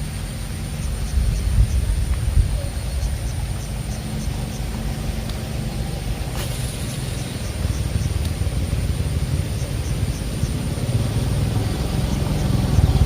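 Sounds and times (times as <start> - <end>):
wind buffeting microphone: 0.0 - 13.0
faint high ticks: 0.8 - 5.6, 6.4 - 8.6.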